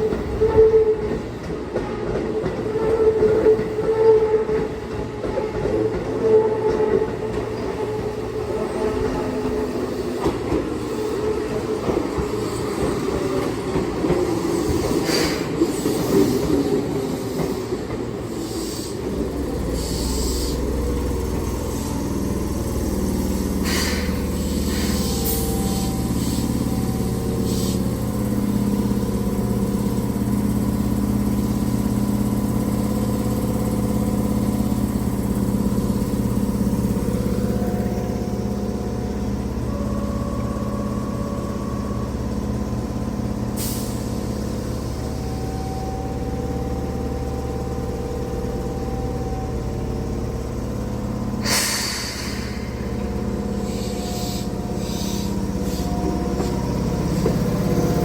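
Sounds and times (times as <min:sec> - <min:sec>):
train equipment humming: 0:00.0 - 0:58.0
sharp hiss of air: 0:14.5 - 0:16.4, 0:23.6 - 0:25.5, 0:51.4 - 0:53.0, 0:53.6 - 0:55.9.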